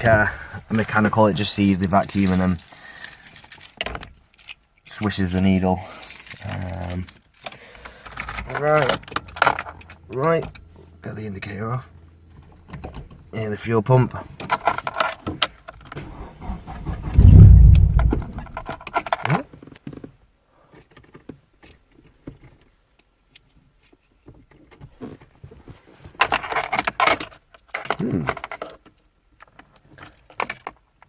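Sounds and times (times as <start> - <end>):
keys jangling: 2.0 - 4.6, 5.9 - 8.4
engine cranking and firing: 15.8 - 18.8.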